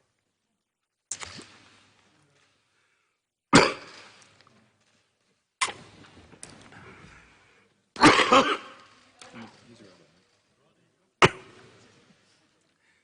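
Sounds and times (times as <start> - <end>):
man coughing: 8.0 - 8.8, 11.2 - 11.6.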